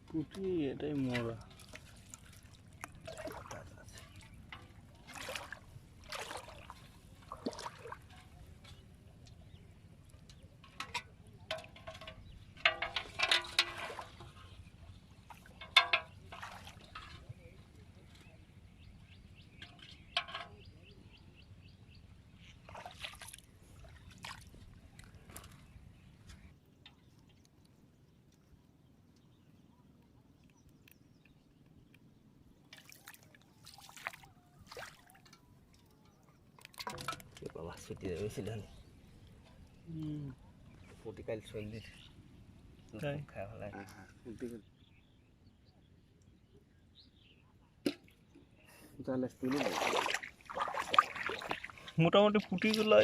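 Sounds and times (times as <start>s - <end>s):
water splashing and sloshing: 0.0s - 20.6s, 22.1s - 28.9s, 32.6s - 39.8s, 49.4s - 53.0s
water trickling and dripping: 0.1s - 17.5s, 49.4s - 53.0s.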